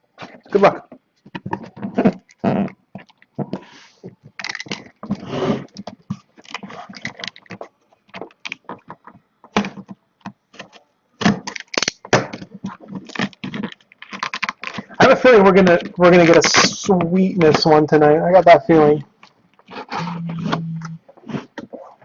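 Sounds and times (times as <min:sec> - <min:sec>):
plastic wrapping rustling: 0:00.2 - 0:17.7.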